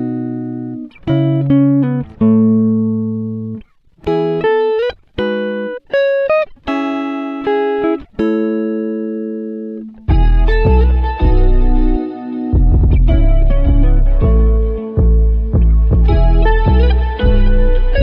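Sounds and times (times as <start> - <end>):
plucked guitar melody: 0.0 - 18.0
bass notes: 10.1 - 18.0.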